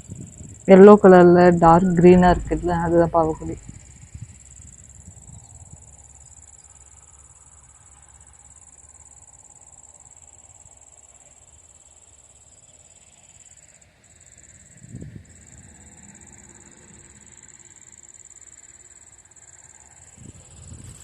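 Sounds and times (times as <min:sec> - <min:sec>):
low rumble: 0:01.2 - 0:03.7.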